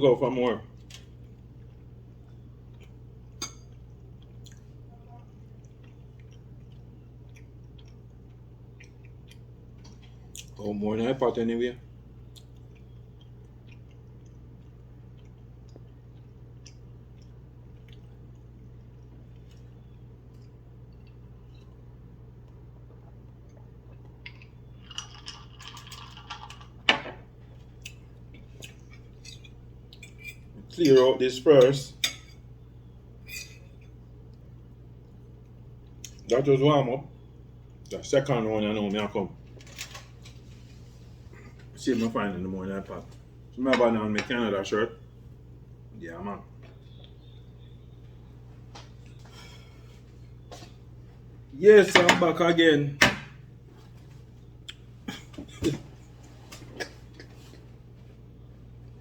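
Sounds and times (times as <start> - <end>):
steady low hum: 0.0 - 59.0
faint chewing: 0.9 - 10.7, 12.1 - 26.8, 27.4 - 30.7
cutlery scraping against a dish: 33.2 - 33.7.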